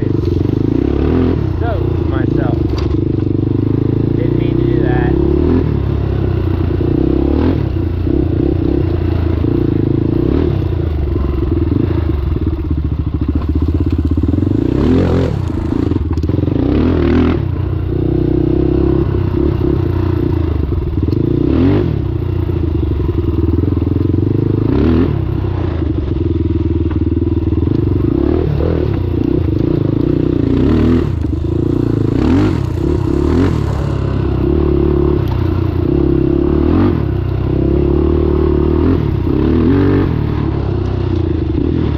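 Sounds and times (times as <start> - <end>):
quad engine revving: 0.0 - 41.9.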